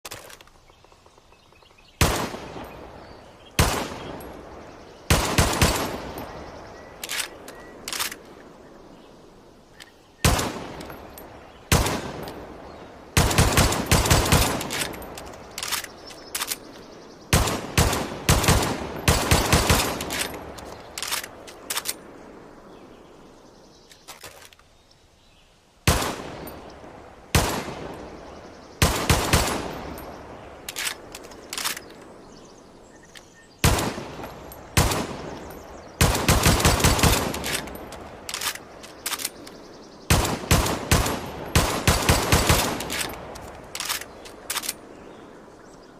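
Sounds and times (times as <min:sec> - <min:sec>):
pistol shots echoing: 0:02.0 - 0:07.4, 0:10.2 - 0:16.7, 0:17.3 - 0:22.2, 0:25.9 - 0:31.8, 0:33.6 - 0:39.4, 0:40.1 - 0:44.9.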